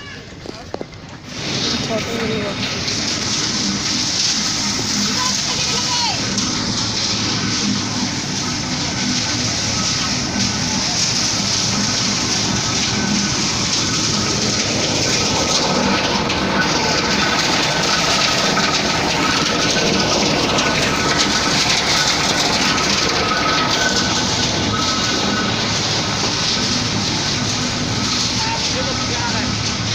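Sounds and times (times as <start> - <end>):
heavy vehicle rumbling and rattling: 0.0 - 29.9.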